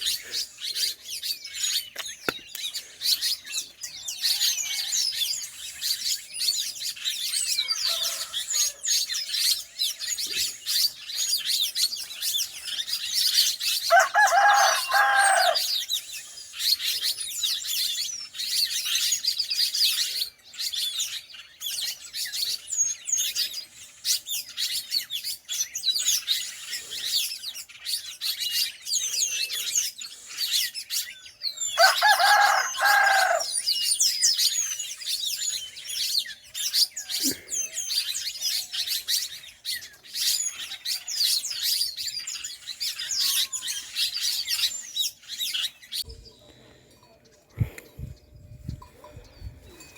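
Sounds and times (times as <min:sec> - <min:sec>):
small birds chirping: 0:00.0 - 0:49.9
rooster crowing: 0:07.6 - 0:09.0, 0:13.8 - 0:15.7, 0:31.8 - 0:33.6.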